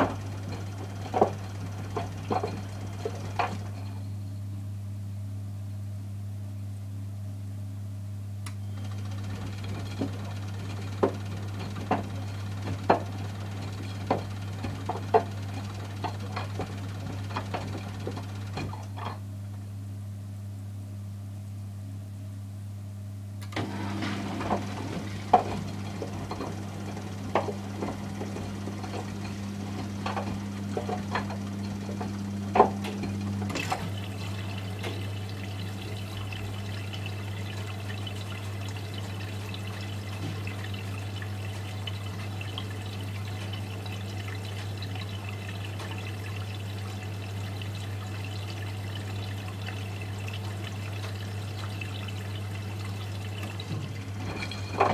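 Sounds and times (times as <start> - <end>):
water running into machine: 0.0 - 3.9, 8.8 - 19.2, 23.4 - 54.9
washing machine humming: 0.0 - 54.9
sharp knocks and splashes: 23.6 - 48.4.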